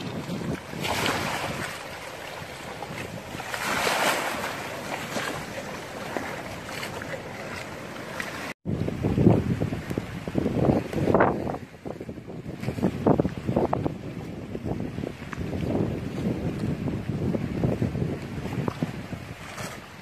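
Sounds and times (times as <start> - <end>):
surf crashing: 0.0 - 11.7
storm wind gusts: 0.0 - 20.0
wind buffeting microphone: 0.0 - 20.0.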